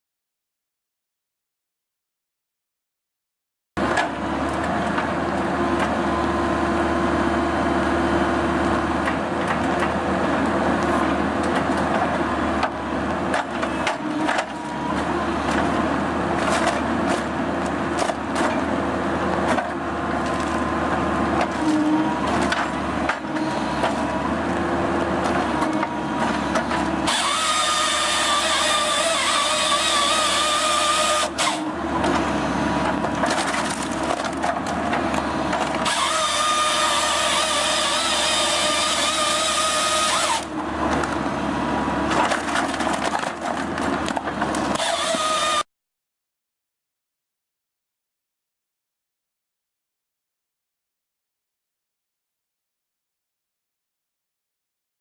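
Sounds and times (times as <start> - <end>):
excavator engine and hydraulics: 3.8 - 45.7
saw whining through log: 12.2 - 17.3, 18.0 - 43.3, 44.0 - 45.7
wood cracking and knocking: 32.9 - 35.0, 42.1 - 44.7.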